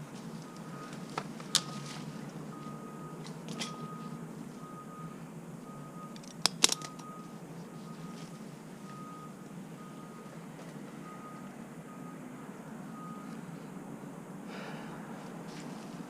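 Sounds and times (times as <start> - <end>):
engine idling: 0.0 - 12.2
backup alarm beeping: 0.4 - 12.3, 13.0 - 13.4.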